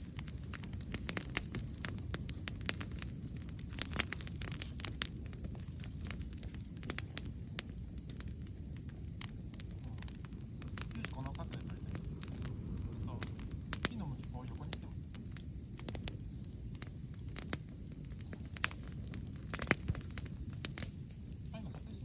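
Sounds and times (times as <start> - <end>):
bonfire crackling and popping: 0.0 - 22.0
low rumble: 5.2 - 22.0.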